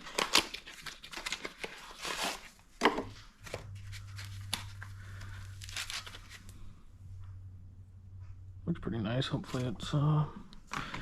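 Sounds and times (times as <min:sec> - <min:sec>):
steady low hum: 0:03.0 - 0:11.0.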